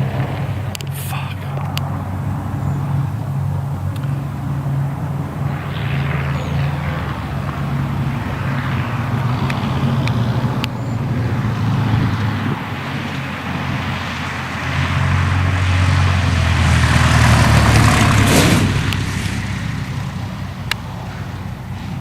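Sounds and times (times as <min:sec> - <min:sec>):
engine humming: 0:00.0 - 0:22.0
rushing noise: 0:00.0 - 0:22.0.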